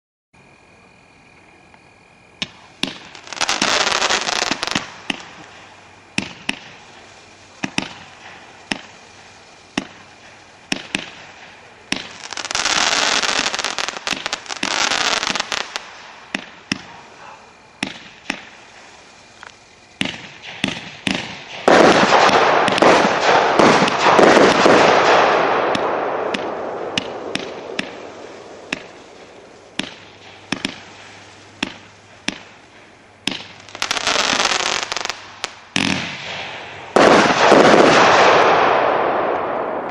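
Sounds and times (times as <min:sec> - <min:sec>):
dense firework crackling: 0:02.3 - 0:39.9
firework shots and bangs: 0:02.4 - 0:19.0, 0:20.0 - 0:39.9.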